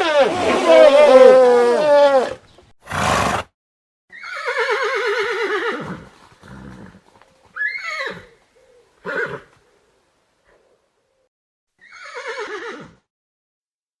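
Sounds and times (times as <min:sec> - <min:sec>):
horse whinnying: 0:00.7 - 0:03.5, 0:04.1 - 0:06.8, 0:11.8 - 0:13.0.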